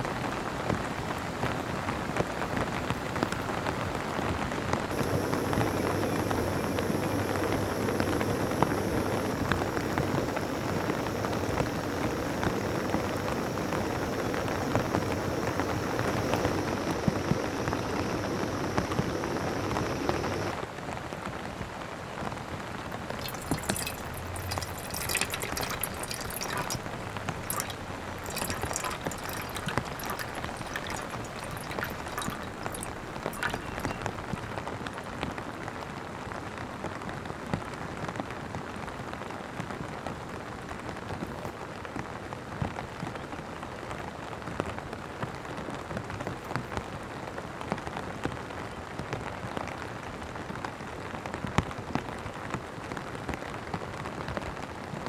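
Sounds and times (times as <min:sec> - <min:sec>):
steady rain with drops ticking: 0:00.0 - 0:20.6, 0:22.8 - 0:35.5.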